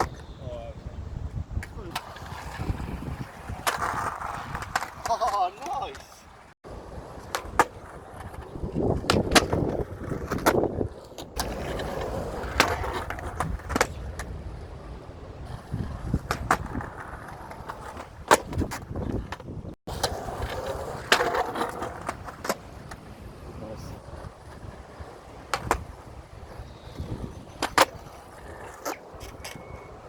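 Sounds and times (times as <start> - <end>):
wind buffeting microphone: 0.0 - 5.2, 5.8 - 21.0, 22.2 - 30.0.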